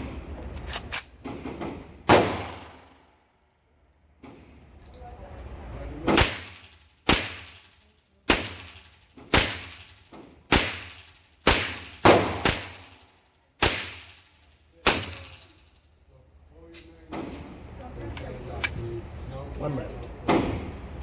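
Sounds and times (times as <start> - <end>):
rifle shots with echo: 2.1 - 3.0, 6.1 - 15.5.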